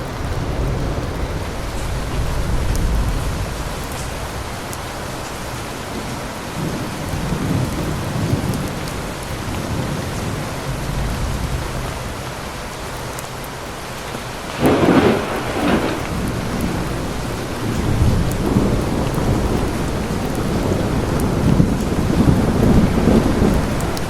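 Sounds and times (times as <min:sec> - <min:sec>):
low thunder rumbling: 0:00.0 - 0:04.7, 0:05.4 - 0:12.4, 0:13.9 - 0:24.0
steady rain falling: 0:00.0 - 0:24.0
loud thunder crack: 0:14.2 - 0:24.0.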